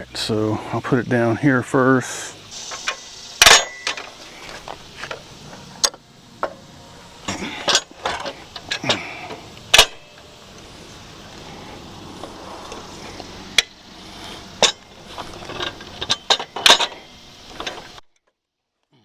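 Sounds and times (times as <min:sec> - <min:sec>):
metal frame clanking and clicking: 0:02.6 - 0:05.2, 0:07.3 - 0:10.3, 0:12.2 - 0:18.0.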